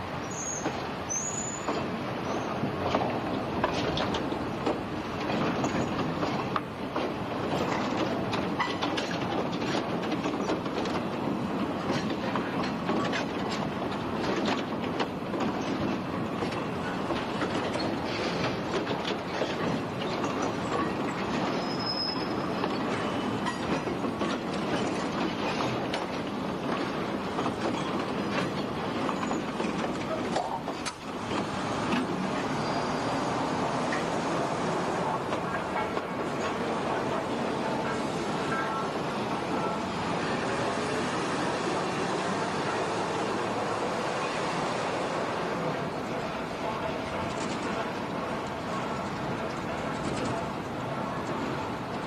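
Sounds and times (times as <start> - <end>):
wheels clicking over rail joints: 0.6 - 52.0
wheel squeal: 19.3 - 23.8, 29.0 - 29.7, 32.4 - 33.5.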